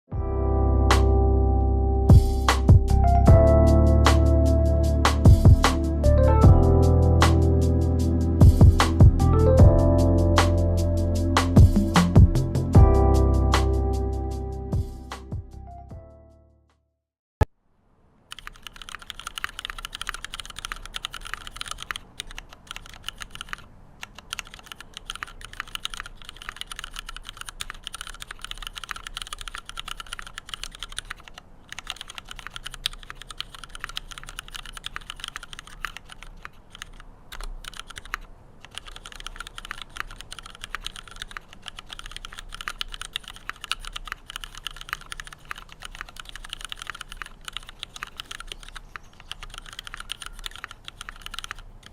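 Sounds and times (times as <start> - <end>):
mechanical keyboard typing: 18.3 - 51.9.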